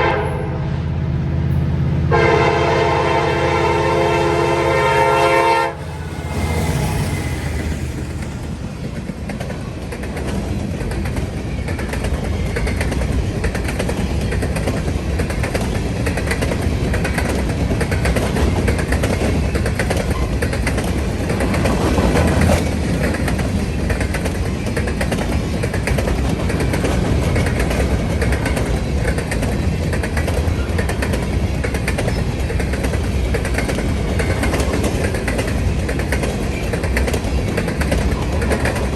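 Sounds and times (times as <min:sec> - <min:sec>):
train horn: 0:00.0 - 0:00.9, 0:02.0 - 0:08.4
train rumbling past: 0:00.0 - 0:38.9.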